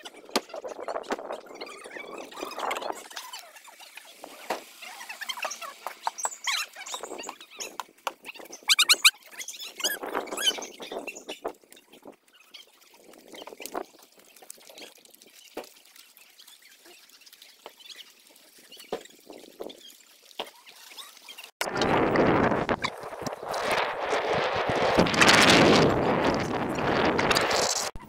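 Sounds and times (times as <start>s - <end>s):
puppies yelping: 8.6s - 10.6s.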